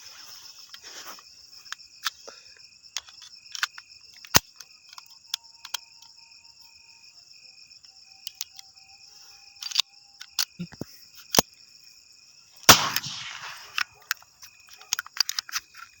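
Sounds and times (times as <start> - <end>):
crickets chirring: 0.0 - 16.0
high insect trill: 0.0 - 16.0
sharp clicks: 3.0 - 6.0, 12.7 - 16.0
loud sharp crack: 12.7 - 14.1.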